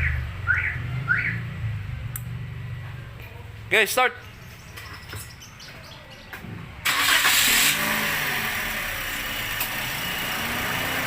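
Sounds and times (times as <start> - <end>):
car engine starting and idling: 6.8 - 11.0.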